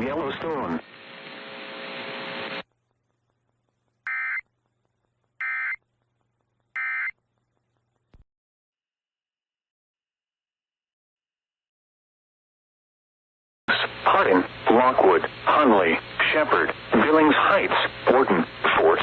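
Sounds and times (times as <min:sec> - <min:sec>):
buzzing radio static: 0:00.0 - 0:02.6, 0:13.7 - 0:19.0.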